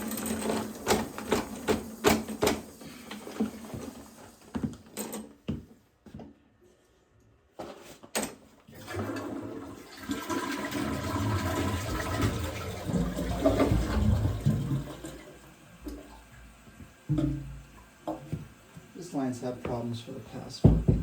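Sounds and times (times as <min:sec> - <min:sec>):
toilet water rushing and gurgling: 0:00.0 - 0:04.5, 0:08.6 - 0:19.6.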